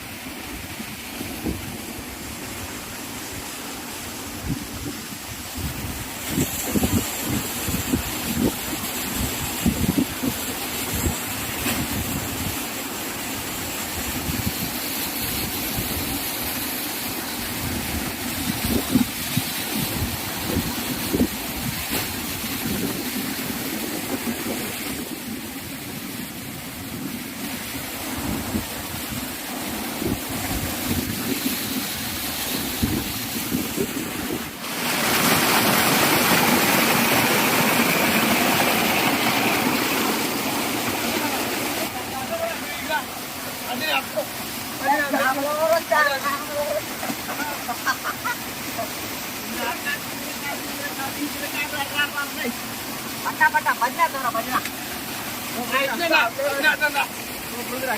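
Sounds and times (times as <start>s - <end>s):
waterfall rushing: 0.0s - 57.9s
wind buffeting microphone: 4.4s - 11.2s, 17.5s - 34.6s.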